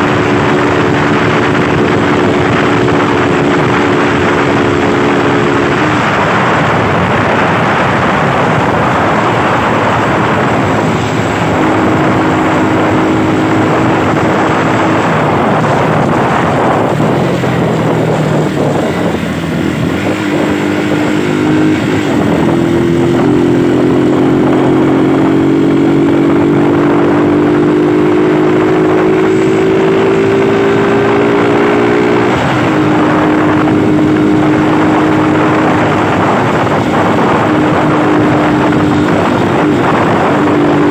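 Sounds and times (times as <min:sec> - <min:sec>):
motorcycle engine running: 0:00.0 - 0:40.9
wind rush on microphone: 0:00.0 - 0:40.9.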